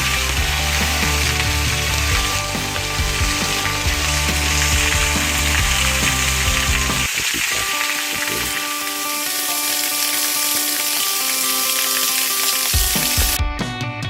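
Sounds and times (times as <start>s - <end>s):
background music sustained notes: 0.0s - 14.0s.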